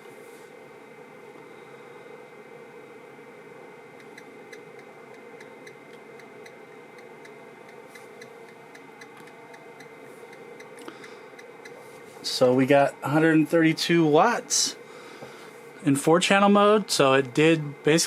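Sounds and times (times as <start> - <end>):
low hum and hiss: 0.0 - 18.0
light regular ticking: 4.0 - 11.8.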